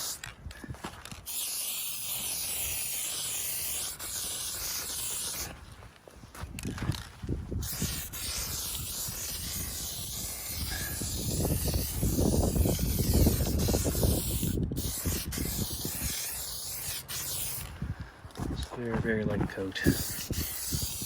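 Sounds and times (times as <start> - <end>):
spray paint hissing: 0.0 - 0.3, 1.2 - 5.6, 7.6 - 17.7, 19.8 - 21.0
wind buffeting microphone: 5.5 - 16.5, 17.6 - 21.0.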